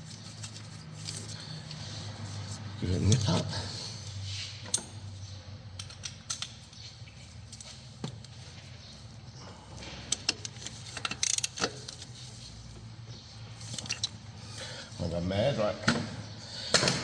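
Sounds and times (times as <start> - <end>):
tools clicking and rattling: 5.7 - 8.4, 9.8 - 12.2, 13.6 - 14.3.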